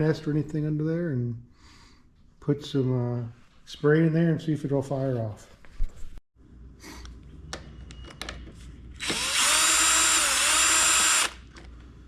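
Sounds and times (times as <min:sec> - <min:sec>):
cordless drill motor whine: 0:09.0 - 0:11.5.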